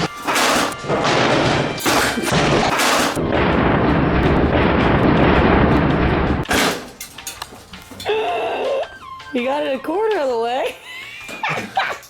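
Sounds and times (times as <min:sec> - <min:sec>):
metal grill rumbling and clattering: 0:00.0 - 0:08.0.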